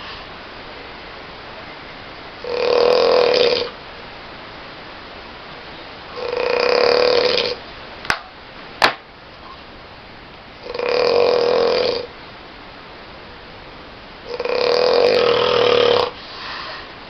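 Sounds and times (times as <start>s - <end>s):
person snoring loudly: 2.4s - 3.8s, 6.1s - 7.6s, 10.6s - 12.1s, 14.3s - 16.7s.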